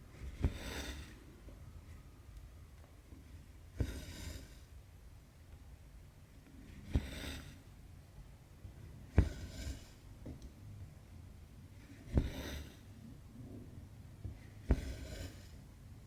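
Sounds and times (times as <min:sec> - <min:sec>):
needle tapping through fabric: 0:09.0 - 0:10.6, 0:12.0 - 0:12.7, 0:14.2 - 0:15.3.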